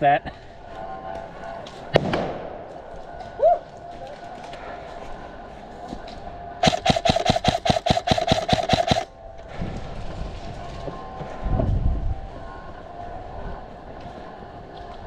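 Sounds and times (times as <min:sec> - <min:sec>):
airsoft rifle rapid firing: 0:06.6 - 0:09.1.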